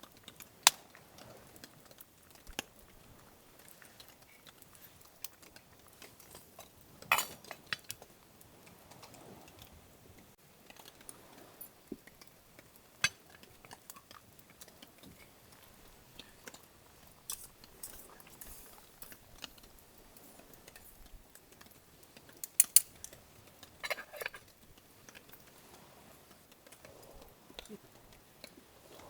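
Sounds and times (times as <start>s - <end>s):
utensils clinking on cookware: 23.8s - 24.4s.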